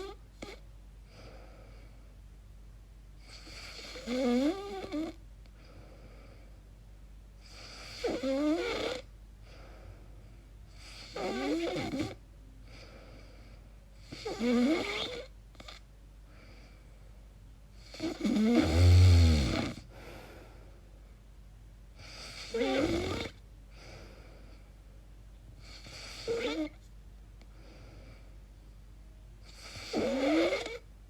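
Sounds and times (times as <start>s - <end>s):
person snoring with wavering pitch: 3.3s - 5.2s, 7.5s - 9.1s, 10.8s - 12.2s, 14.0s - 15.7s, 17.8s - 19.9s, 22.2s - 23.4s, 25.7s - 26.8s, 29.5s - 30.9s.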